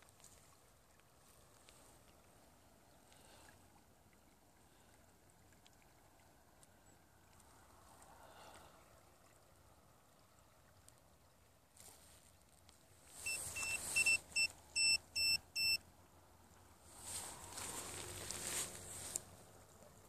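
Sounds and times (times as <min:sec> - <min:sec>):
high electronic beeps: 0:13.3 - 0:15.8.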